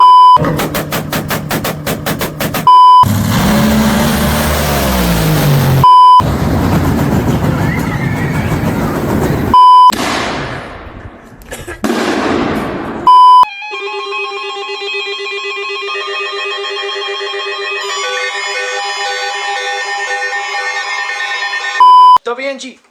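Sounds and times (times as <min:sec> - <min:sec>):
loud beeps: 0:00.0 - 0:00.5, 0:02.7 - 0:03.1, 0:05.7 - 0:06.2, 0:09.5 - 0:09.9, 0:13.1 - 0:13.5, 0:21.8 - 0:22.2
fast percussion beat: 0:00.4 - 0:03.1, 0:06.6 - 0:09.6.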